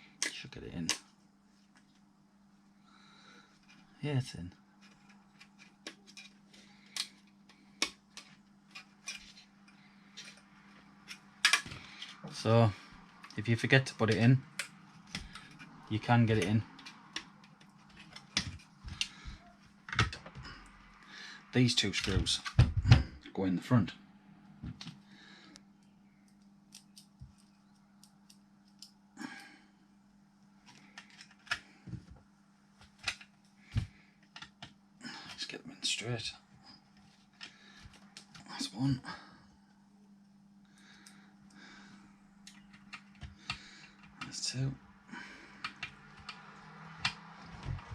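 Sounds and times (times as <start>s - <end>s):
faint steady hum: 0.0s - 47.9s
sharp clicks handling radio casing: 11.0s - 12.2s
small parts clicking and tapping: 13.0s - 20.4s, 25.5s - 29.0s, 30.7s - 31.7s, 33.0s - 35.4s, 42.4s - 44.6s, 45.6s - 47.9s.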